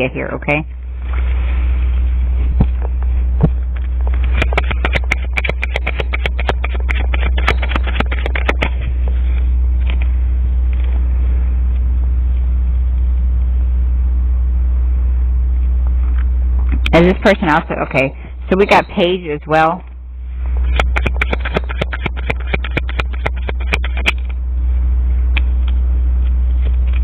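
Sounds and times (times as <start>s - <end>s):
steady low rumble: 0.0s - 27.0s
cards being shuffled: 4.1s - 8.8s, 20.6s - 24.4s.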